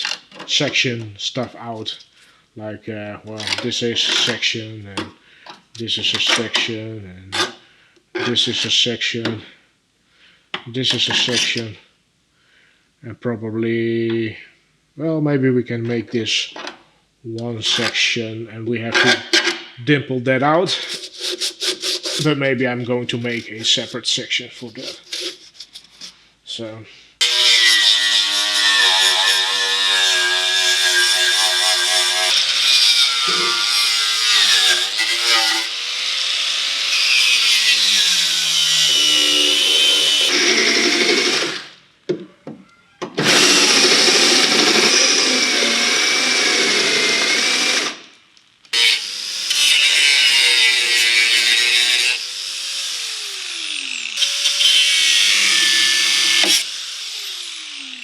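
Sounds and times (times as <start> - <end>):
power tool on sheet metal: 24.6 - 25.5, 27.2 - 41.8, 43.2 - 48.1, 48.7 - 58.0.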